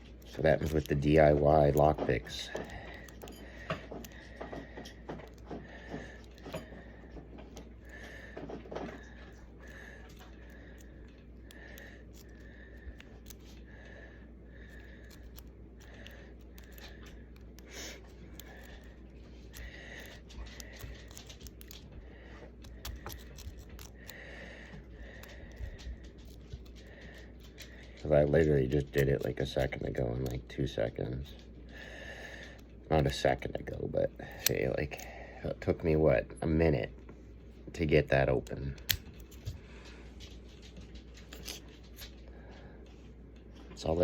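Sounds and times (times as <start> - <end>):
lock pick clicking and scraping: 1.8 - 5.5, 14.7 - 21.9, 22.6 - 24.2, 38.8 - 39.4.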